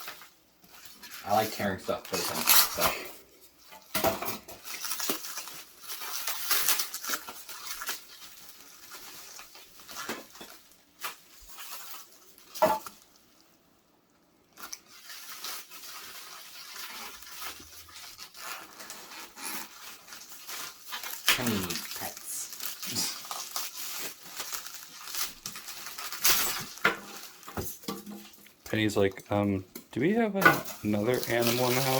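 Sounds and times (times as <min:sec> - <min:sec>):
packaging tearing and rustling: 0:00.0 - 0:13.4, 0:14.5 - 0:28.9, 0:30.5 - 0:31.9.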